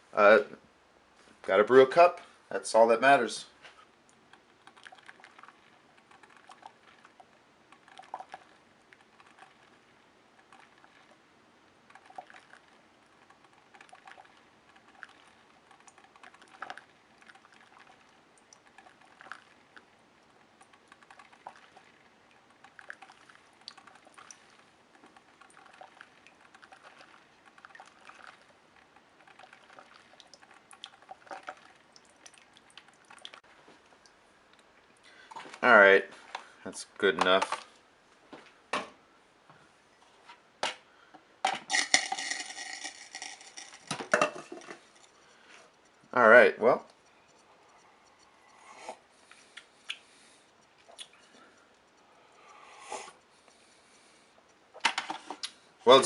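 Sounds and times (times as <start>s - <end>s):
coffee maker popping and dripping: 41.4s - 46.1s.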